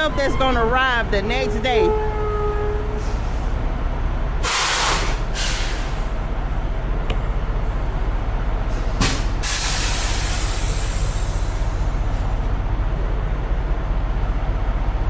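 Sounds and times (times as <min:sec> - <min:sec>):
truck engine and road noise: 0:00.0 - 0:15.0
air brake hiss: 0:04.4 - 0:06.1, 0:08.7 - 0:12.2.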